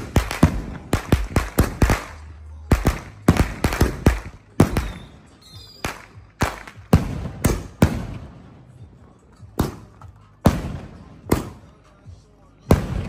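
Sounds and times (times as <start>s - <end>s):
firework bangs: 0.0s - 8.8s, 9.6s - 11.7s, 12.7s - 13.0s.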